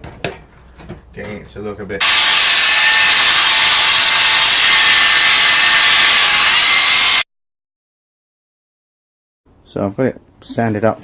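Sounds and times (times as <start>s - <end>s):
power sander on wood: 2.0s - 7.2s.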